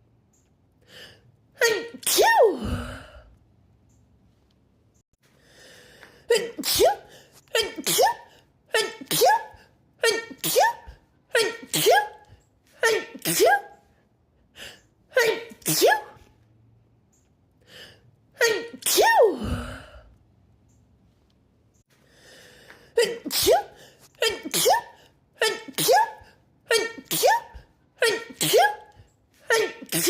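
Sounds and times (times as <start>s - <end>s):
woman sneezing: 1.6s - 3.2s, 6.3s - 13.8s, 15.2s - 16.3s, 18.4s - 20.0s, 23.0s - 30.0s.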